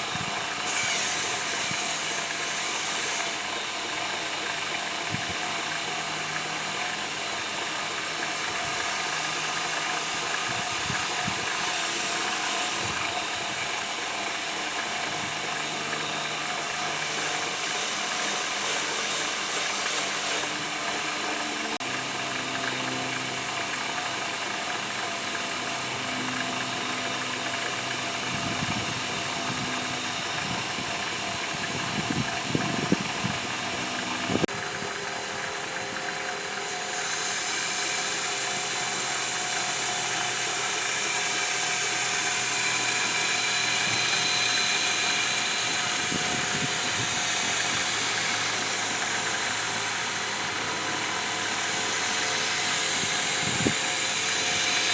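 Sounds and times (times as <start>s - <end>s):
workshop machine hissing and grinding: 0.0s - 54.9s.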